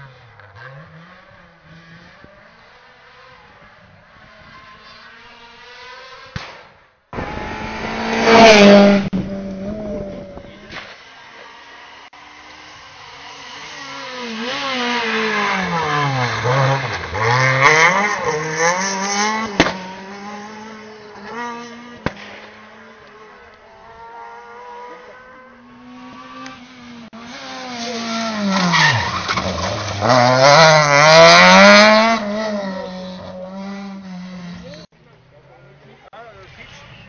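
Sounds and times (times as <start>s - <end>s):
rally car engine revving: 0.0s - 6.4s, 7.1s - 36.0s
second car engine: 0.0s - 37.0s
sharp cracks: 6.3s - 7.3s, 19.6s - 19.8s, 22.0s - 22.7s.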